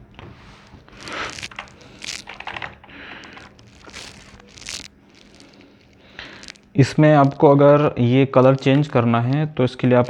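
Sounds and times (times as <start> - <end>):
keyboard rustling: 0.0 - 7.4.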